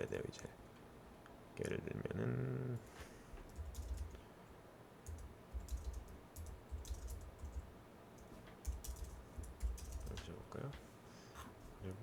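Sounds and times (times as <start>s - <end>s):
keyboard and mouse clicks: 3.4s - 4.2s, 5.0s - 10.8s.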